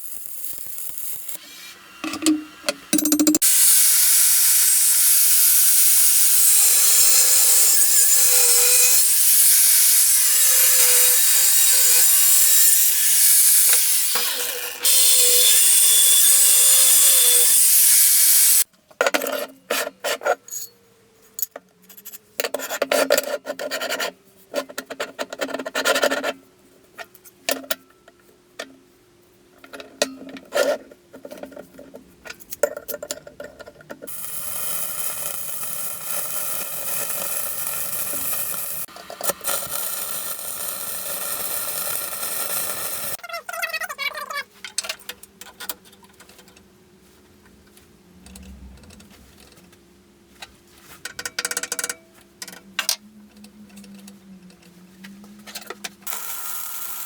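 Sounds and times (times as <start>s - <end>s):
power grinder running: 3.4s - 18.6s.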